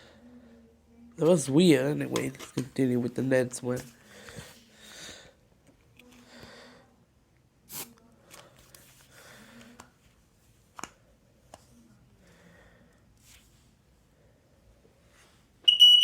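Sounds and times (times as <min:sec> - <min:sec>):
soft breaths: 0:00.0 - 0:01.0, 0:03.9 - 0:07.2, 0:08.0 - 0:15.6.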